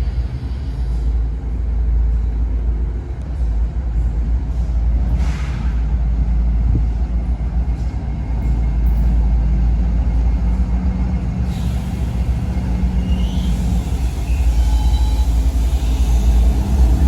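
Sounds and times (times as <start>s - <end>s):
diesel locomotive rumbling: 0.0s - 17.0s
air hiss: 11.5s - 17.0s.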